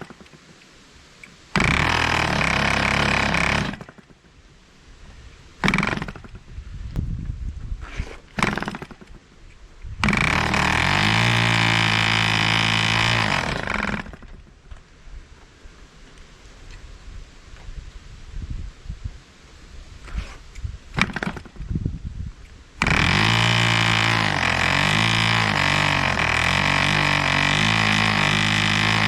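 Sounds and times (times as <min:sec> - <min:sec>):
model airplane engine firing: 0:05.6 - 0:06.5, 0:08.2 - 0:09.2, 0:10.0 - 0:14.5, 0:20.9 - 0:21.7, 0:22.8 - 0:29.0.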